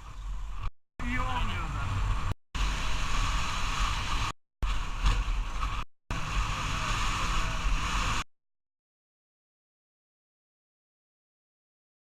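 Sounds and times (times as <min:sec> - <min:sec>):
steady rushing noise with low rumble: 0:00.0 - 0:08.3.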